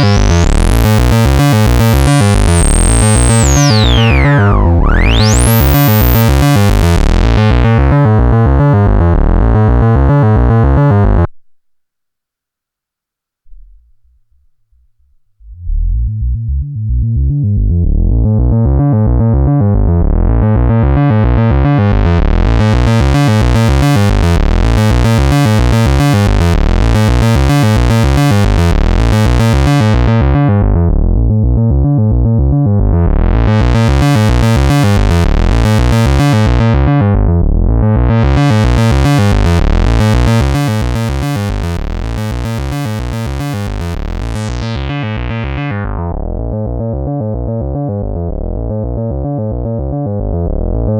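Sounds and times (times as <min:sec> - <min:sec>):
synthesizer fast repeating notes: 0:00.0 - 0:11.3, 0:20.1 - 0:30.4, 0:33.1 - 0:36.8, 0:38.1 - 0:49.8.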